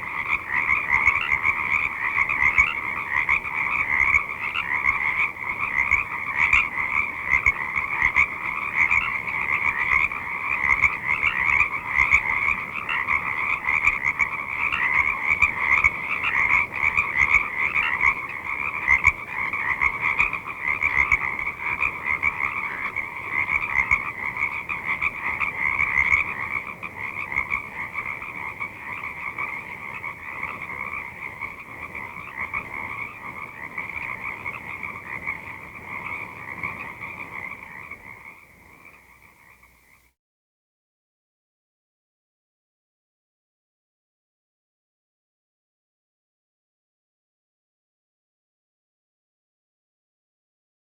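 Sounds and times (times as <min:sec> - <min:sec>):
chorus of frogs croaking: 0:00.0 - 0:40.1.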